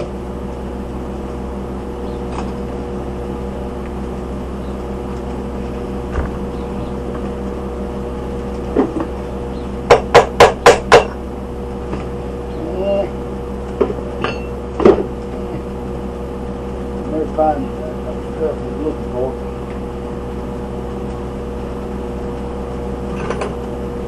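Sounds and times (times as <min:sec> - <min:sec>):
steady hum: 0:00.0 - 0:24.0
hammer striking metal: 0:14.2 - 0:14.5.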